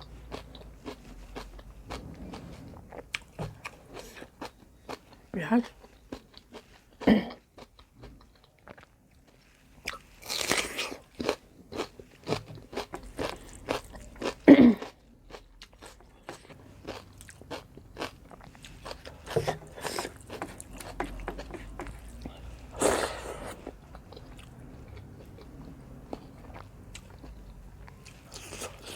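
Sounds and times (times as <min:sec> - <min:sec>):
crunchy chewing: 0:00.0 - 0:28.9.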